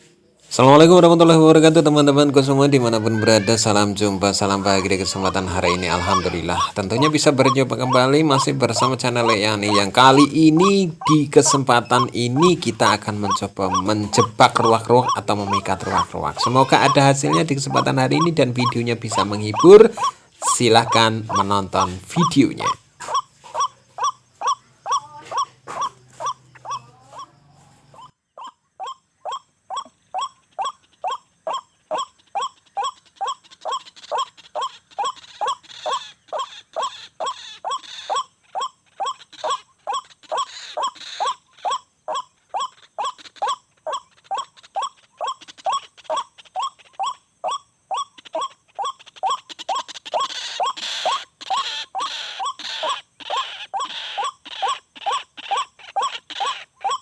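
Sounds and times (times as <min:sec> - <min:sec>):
bird calling harsh notes: 0:00.0 - 0:57.0.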